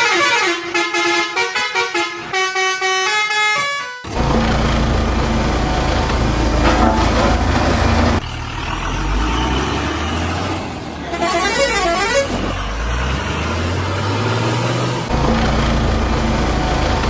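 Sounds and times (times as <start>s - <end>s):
heavy vehicle engine rumbling: 4.0s - 17.0s.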